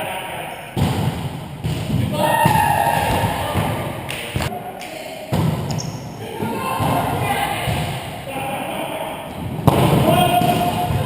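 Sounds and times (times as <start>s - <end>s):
players' voices: 0.0s - 11.0s
volleyball struck thud: 0.8s - 3.8s, 9.4s - 11.0s.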